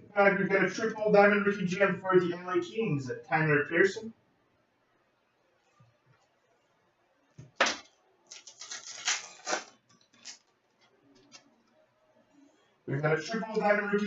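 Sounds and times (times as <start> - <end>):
wrapper tearing: 7.7 - 10.5
crinkly wrapper rustling: 8.3 - 11.6.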